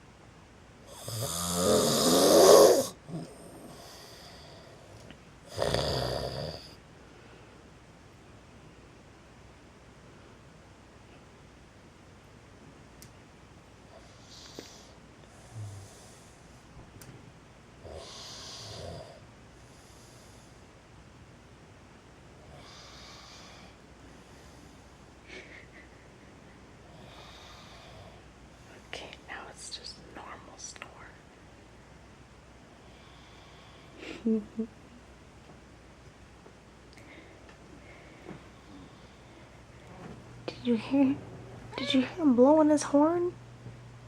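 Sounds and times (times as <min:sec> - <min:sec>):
man snoring: 0:00.9 - 0:04.8, 0:05.5 - 0:06.8, 0:15.5 - 0:16.1, 0:17.8 - 0:19.2
quiet breathing: 0:02.8 - 0:07.8, 0:13.9 - 0:16.9, 0:17.8 - 0:20.8, 0:22.4 - 0:31.5, 0:32.6 - 0:34.3, 0:36.9 - 0:41.6.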